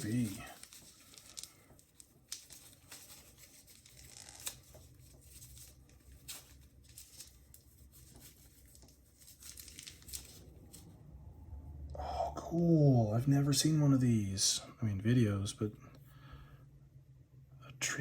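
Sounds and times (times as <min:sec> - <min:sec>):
packaging tearing and crinkling: 0:00.0 - 0:10.8.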